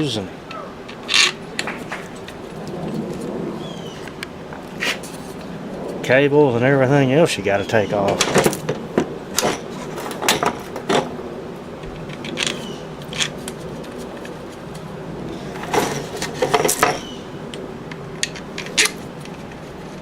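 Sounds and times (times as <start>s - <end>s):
steady low hum: 0.0s - 20.0s
metal parts clicking and knocking: 0.9s - 2.4s, 9.4s - 11.1s, 11.8s - 14.8s, 15.4s - 20.0s.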